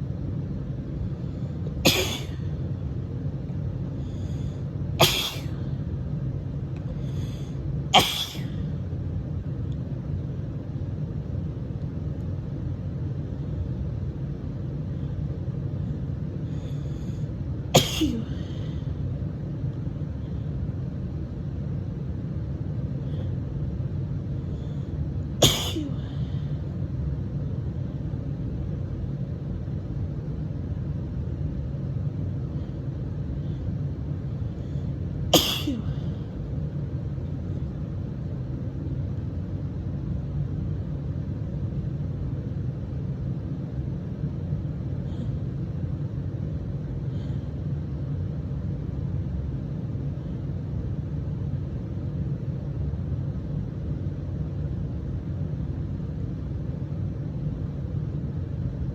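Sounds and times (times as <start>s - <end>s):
steady low rumble: 0.0s - 58.9s
woman sneezing: 1.9s - 2.5s, 5.0s - 5.6s, 8.0s - 8.6s, 17.8s - 18.6s, 25.4s - 26.2s, 35.4s - 36.0s.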